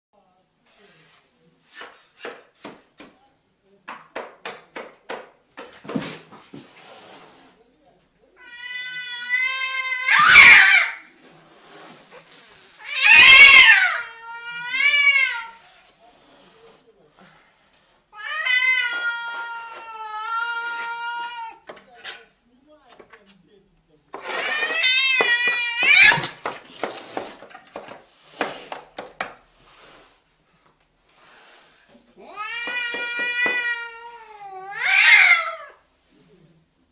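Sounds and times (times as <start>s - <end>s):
cat yowling: 8.4s - 11.0s, 12.8s - 15.6s, 24.3s - 26.3s, 32.3s - 35.8s
cat screeching: 8.4s - 11.1s, 12.8s - 15.7s, 18.2s - 21.6s, 24.2s - 26.4s, 32.2s - 35.8s.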